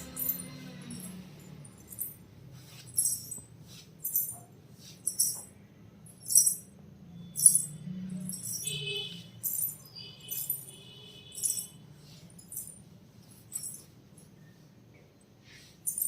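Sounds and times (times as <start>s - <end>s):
ankle bells jingling: 0.0s - 5.5s, 6.1s - 6.7s, 7.4s - 13.9s.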